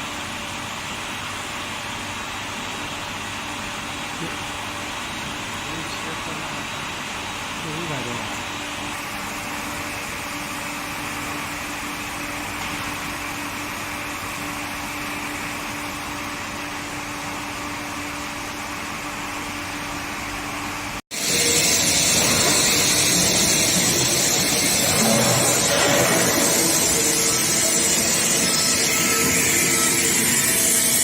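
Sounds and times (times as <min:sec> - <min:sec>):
hissy machine noise: 0:03.3 - 0:31.0
machine hum: 0:08.6 - 0:31.0
constant tone: 0:21.2 - 0:31.0.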